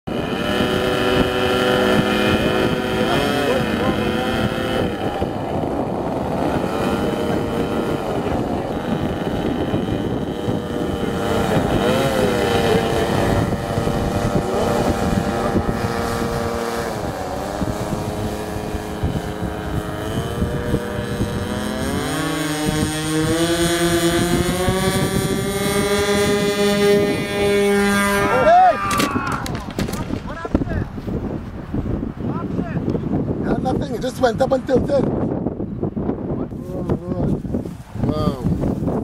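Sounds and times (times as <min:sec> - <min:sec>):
wind noise on microphone: 0:00.0 - 0:39.0
model plane engines passing: 0:00.1 - 0:29.7.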